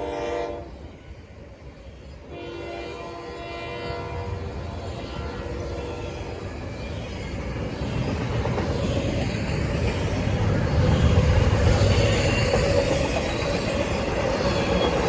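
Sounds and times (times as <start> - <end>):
train horn blast: 0.0 - 0.8, 2.3 - 6.4.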